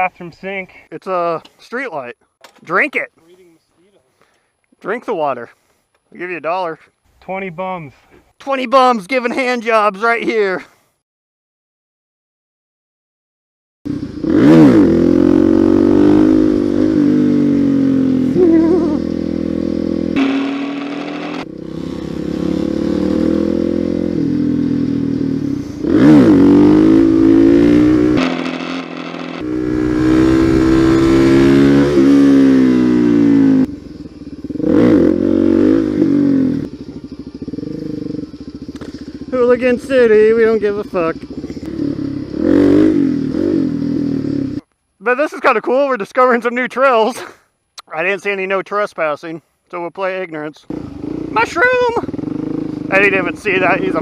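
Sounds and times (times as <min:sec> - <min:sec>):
motorcycle engine revving: 0:13.9 - 0:44.6, 0:50.7 - 0:54.0.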